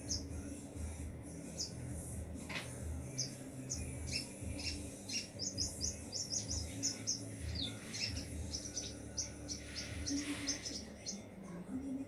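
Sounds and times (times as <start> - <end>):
small bird chirping: 3.1 - 11.3.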